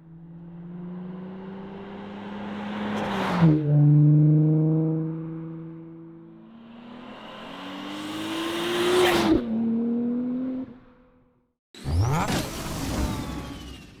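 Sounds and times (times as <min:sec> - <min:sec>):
car accelerating hard: 0:00.2 - 0:11.0
loud car engine passing by: 0:00.3 - 0:10.5.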